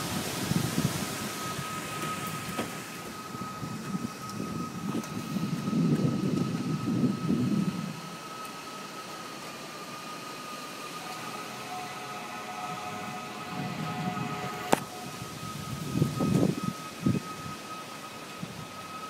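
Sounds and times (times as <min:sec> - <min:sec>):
strong wind buffeting microphone: 0:13.5 - 0:17.6.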